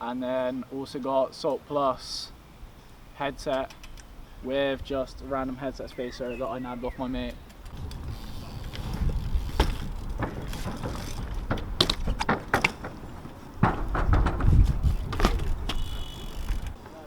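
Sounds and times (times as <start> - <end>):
bike parts clicking and rattling: 3.4 - 4.2, 7.2 - 17.0
knocks: 9.5 - 15.8.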